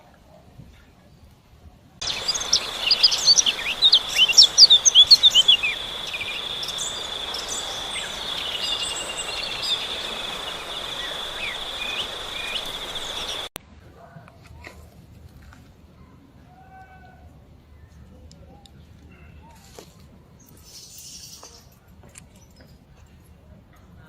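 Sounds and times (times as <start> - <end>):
high-pitched insect drone: 2.0 - 13.5
birds chirping: 2.0 - 13.6.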